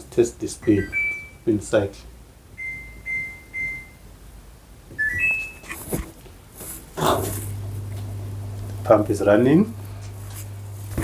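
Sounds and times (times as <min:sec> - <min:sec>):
washing machine beeps: 0:00.6 - 0:01.5, 0:02.6 - 0:04.1, 0:05.0 - 0:05.8
drain pump humming: 0:07.0 - 0:11.0.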